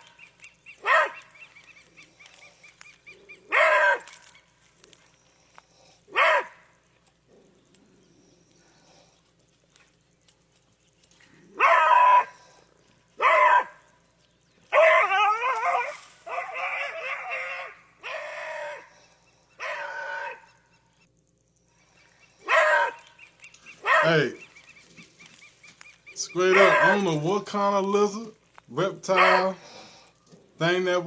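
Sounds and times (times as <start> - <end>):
dog yelping and crying: 0.0 - 4.3, 6.1 - 6.6, 11.5 - 13.8, 14.7 - 20.8, 22.4 - 23.2, 23.8 - 24.4, 26.1 - 27.3, 29.1 - 29.6.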